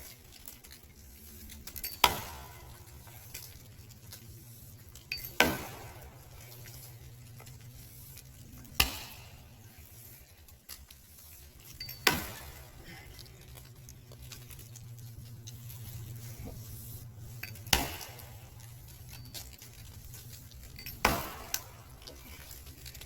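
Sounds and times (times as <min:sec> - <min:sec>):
axe chopping wood: 0:02.0 - 0:02.6, 0:05.4 - 0:06.2, 0:08.8 - 0:09.4, 0:12.0 - 0:12.6, 0:17.7 - 0:18.4, 0:21.0 - 0:22.1.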